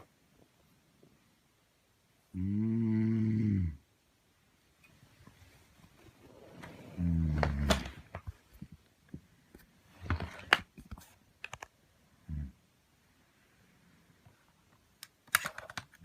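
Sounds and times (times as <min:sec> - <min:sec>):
man snoring: 0:02.4 - 0:03.8.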